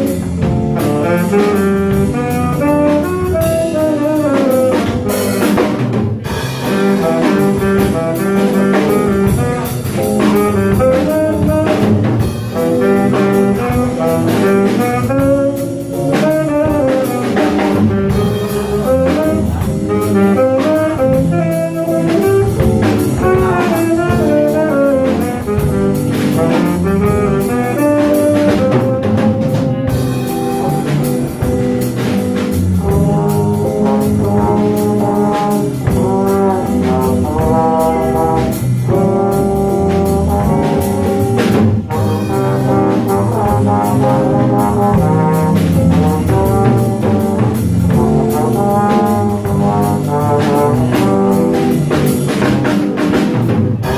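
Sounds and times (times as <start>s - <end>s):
jazz band playing: 0.0s - 53.9s.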